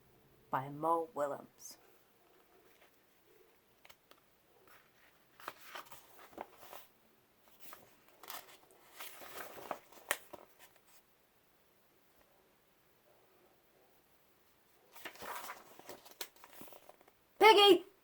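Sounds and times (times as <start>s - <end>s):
soft clicks of book handling: 2.2s - 6.9s, 7.5s - 11.0s, 14.9s - 17.2s
paper rustling: 3.8s - 6.9s, 7.5s - 11.0s, 14.8s - 17.2s.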